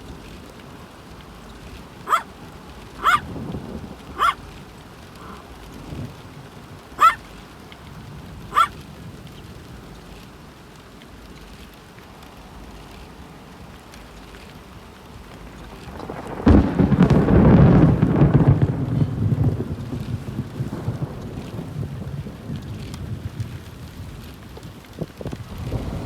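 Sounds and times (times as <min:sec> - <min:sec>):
rain pattering: 0:00.0 - 0:26.0
thunder clap and rumble: 0:01.1 - 0:10.0, 0:15.4 - 0:26.0.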